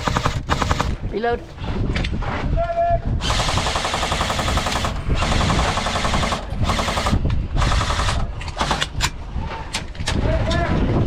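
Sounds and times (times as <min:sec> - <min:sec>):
airsoft gun firing bursts: 0:00.0 - 0:01.0, 0:03.2 - 0:09.0.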